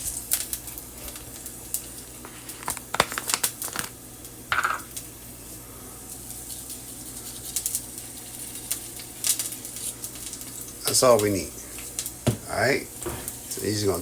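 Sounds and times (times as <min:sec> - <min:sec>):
containers clicking and tapping: 0:02.3 - 0:03.9, 0:04.5 - 0:04.9.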